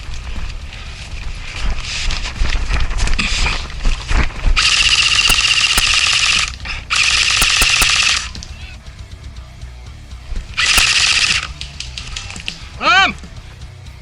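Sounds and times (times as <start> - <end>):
airsoft gun full-auto fire: 4.6 - 8.4, 10.6 - 11.5.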